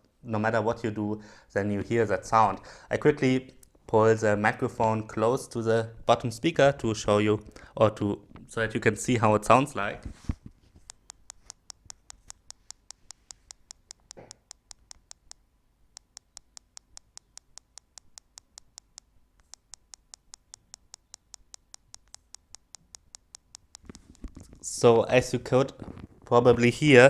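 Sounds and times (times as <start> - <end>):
tablet speaker clicking: 10.0 - 24.7.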